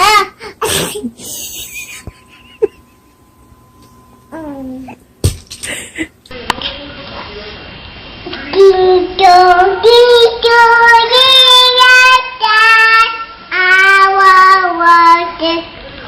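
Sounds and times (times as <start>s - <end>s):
child singing: 8.3s - 16.0s.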